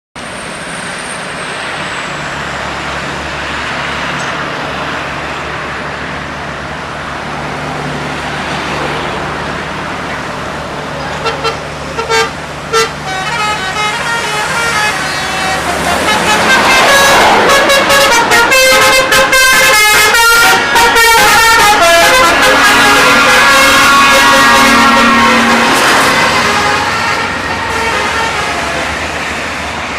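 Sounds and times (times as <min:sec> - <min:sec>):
bus engine and road noise: 0:00.2 - 0:29.9
musical bus horn toots: 0:11.1 - 0:29.0.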